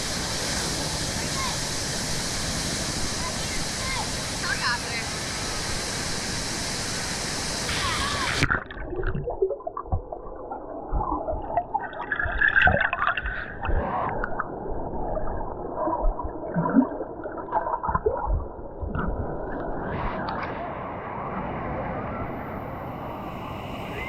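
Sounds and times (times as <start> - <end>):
underwater gurgling and sloshing: 8.1 - 24.0
bubbling: 8.2 - 19.7
underwater knocks: 9.8 - 10.2.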